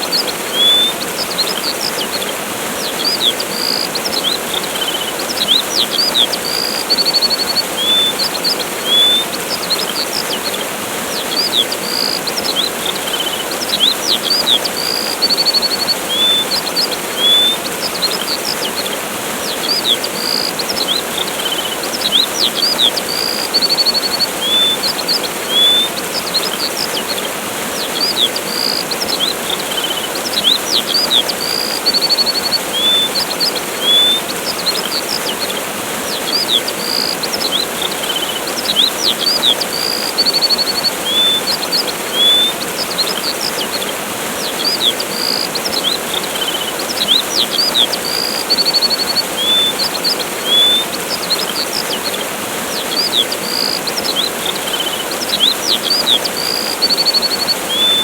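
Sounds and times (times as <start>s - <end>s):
small birds chirping: 0.0s - 58.0s
waterfall rushing: 0.0s - 58.0s.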